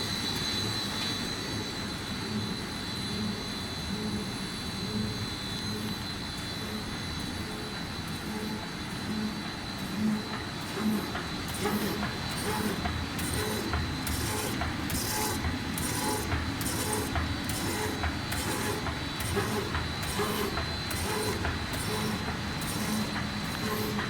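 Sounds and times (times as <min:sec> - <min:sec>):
high machine whine: 0:00.0 - 0:24.0
stamping machine clatter: 0:09.2 - 0:24.0.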